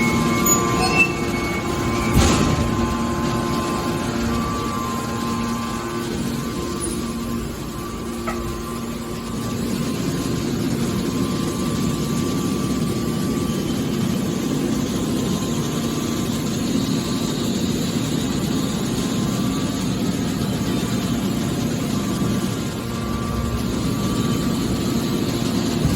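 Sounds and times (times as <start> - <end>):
baler machine humming: 0.0 - 15.4, 21.6 - 25.9.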